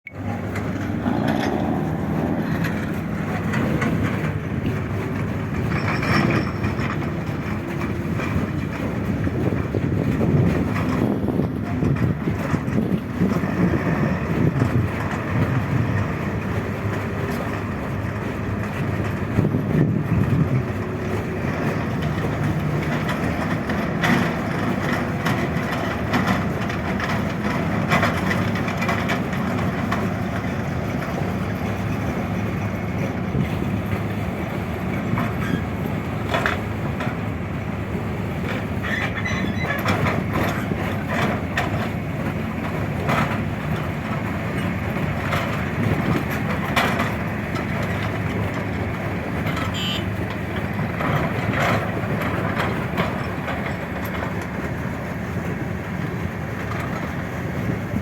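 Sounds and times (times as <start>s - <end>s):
heavy machine engine rumbling: 0.0s - 58.0s.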